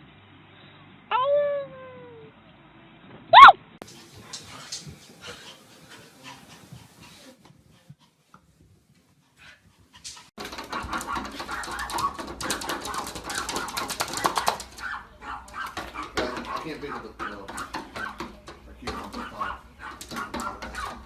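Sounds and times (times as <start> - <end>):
dog sounds: 3.4 - 8.3, 9.3 - 21.0
rapid clicks and noise: 10.0 - 14.8.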